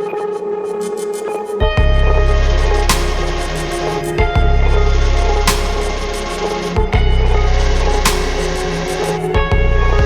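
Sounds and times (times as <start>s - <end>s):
music with bass pulse: 1.5s - 10.0s
percussion hit: 1.6s - 8.8s.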